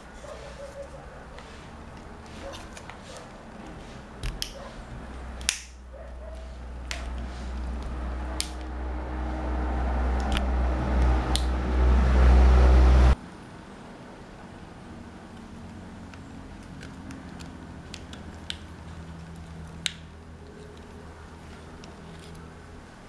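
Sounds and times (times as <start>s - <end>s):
low rumble: 7.1s - 13.2s.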